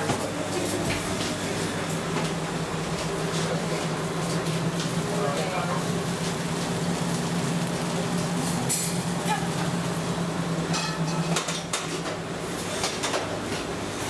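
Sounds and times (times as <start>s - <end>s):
clatter of utensils and dishes: 10.7s - 12.2s.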